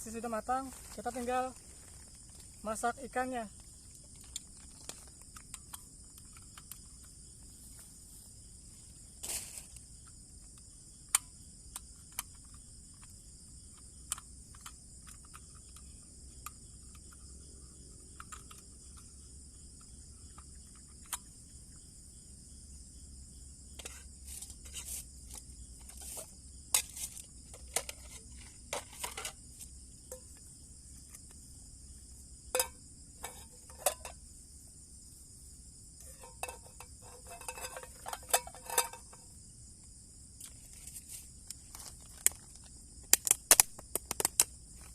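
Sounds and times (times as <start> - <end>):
insects chirring: 0.0 - 44.9
cooking pot and utensils clinking: 32.5 - 34.2, 36.0 - 39.2.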